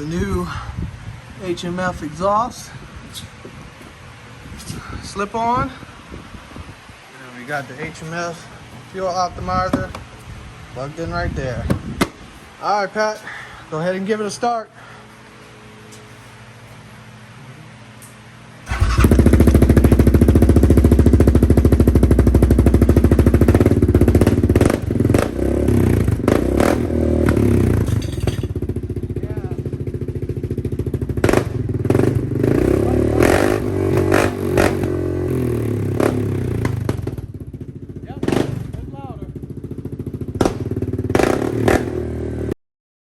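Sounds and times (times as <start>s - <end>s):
motorcycle engine starting and running: 18.6s - 42.6s.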